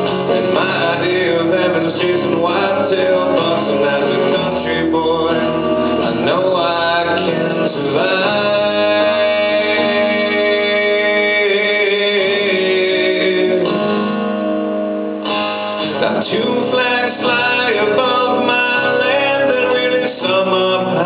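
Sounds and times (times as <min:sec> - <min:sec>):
man singing: 0:00.0 - 0:14.2, 0:15.7 - 0:21.0
guitar-backed country band music: 0:00.0 - 0:21.0.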